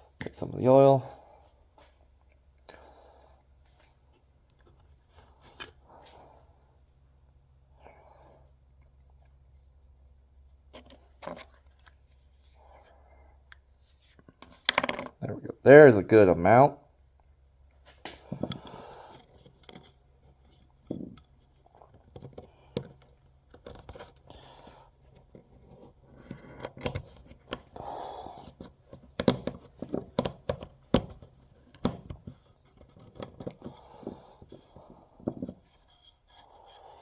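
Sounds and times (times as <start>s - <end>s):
small objects clicking and scraping: 18.4s - 37.0s.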